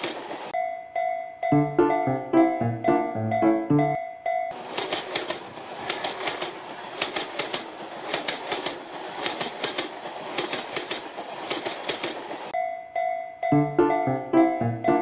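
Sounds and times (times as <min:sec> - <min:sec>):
train wheels clacking over rail joints: 0:00.0 - 0:00.5, 0:04.5 - 0:12.6
train rushing noise: 0:00.0 - 0:00.6, 0:04.5 - 0:12.6
music tones: 0:01.4 - 0:04.4, 0:13.4 - 0:15.0.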